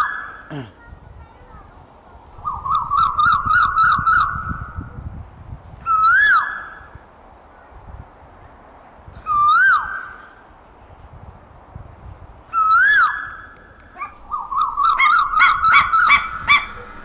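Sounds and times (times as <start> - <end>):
bird whistled calls: 2.4 - 5.0, 5.8 - 7.0, 9.2 - 10.4, 12.5 - 17.0.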